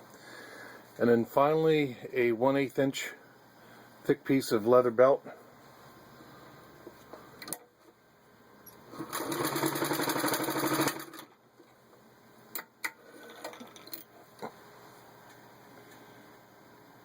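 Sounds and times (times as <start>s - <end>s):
sewing machine stitching leather: 8.9s - 11.3s, 13.1s - 13.9s.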